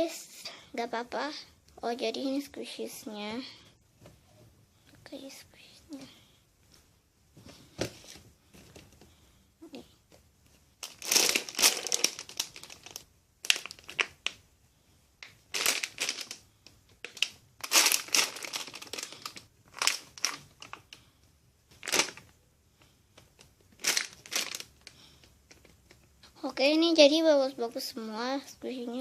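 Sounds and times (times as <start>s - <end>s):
plastic wrapping crinkling: 10.8s - 14.4s, 15.2s - 16.4s, 17.0s - 21.0s, 21.8s - 22.4s, 23.2s - 26.1s.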